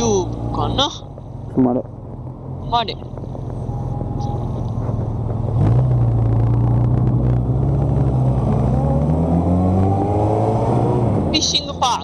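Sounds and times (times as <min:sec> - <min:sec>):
motorcycle engine accelerating: 0:00.0 - 0:11.8.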